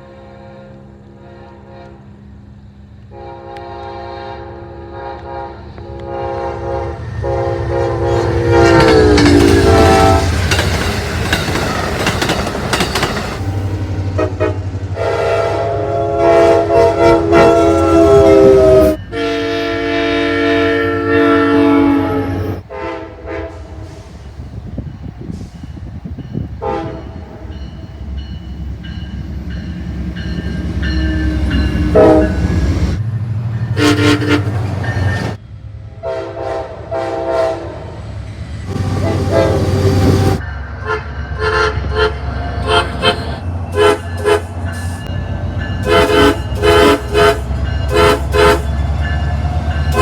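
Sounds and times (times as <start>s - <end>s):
locomotive air horns: 0.0s - 2.2s, 3.1s - 10.5s, 13.4s - 24.2s, 26.6s - 27.6s, 31.0s - 33.0s, 33.7s - 35.4s, 36.0s - 37.9s, 38.7s - 45.1s, 45.8s - 48.9s
low rumble of trains: 0.0s - 50.0s.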